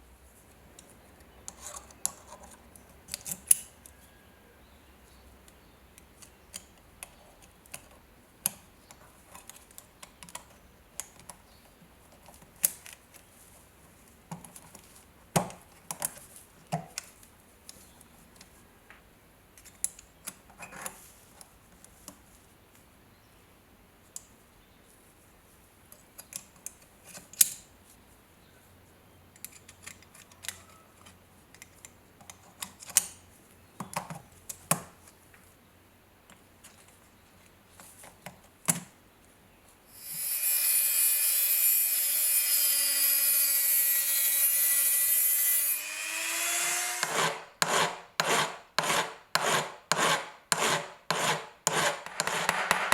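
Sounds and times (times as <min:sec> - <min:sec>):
small power tool running: 0:40.0 - 0:47.4
metal rubbing strokes: 0:51.2 - 0:52.9.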